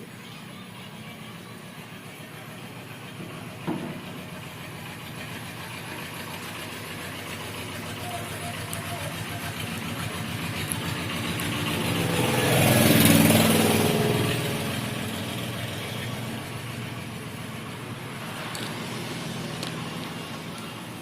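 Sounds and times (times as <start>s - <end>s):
vehicle engine running: 0.0s - 21.0s.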